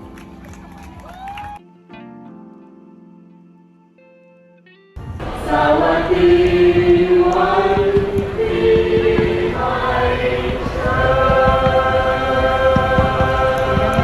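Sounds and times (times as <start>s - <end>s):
quiet instrumental notes: 0.0s - 14.0s
choir singing held notes: 5.0s - 14.0s.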